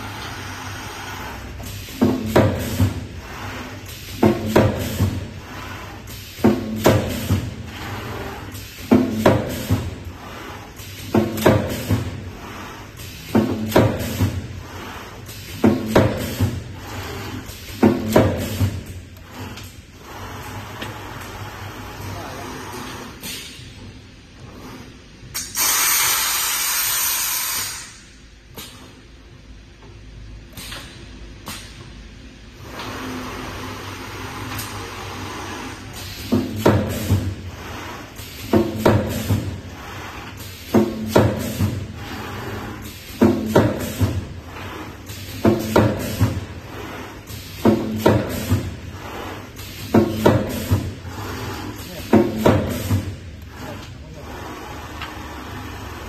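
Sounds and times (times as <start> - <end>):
pneumatic air hiss: 22.7 - 23.8, 25.3 - 29.0, 30.5 - 31.8, 32.8 - 53.2.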